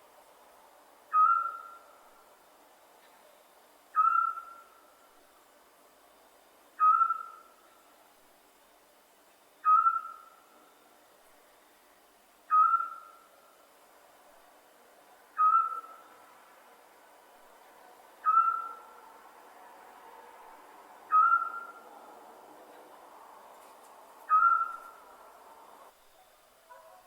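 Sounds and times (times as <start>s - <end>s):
faint background hiss: 0.0s - 27.0s
owl whistled hoot: 1.1s - 2.0s, 3.9s - 4.8s, 6.8s - 7.6s, 9.6s - 10.4s, 12.5s - 13.3s, 15.4s - 16.1s, 18.2s - 18.9s, 21.1s - 21.8s, 24.3s - 25.0s.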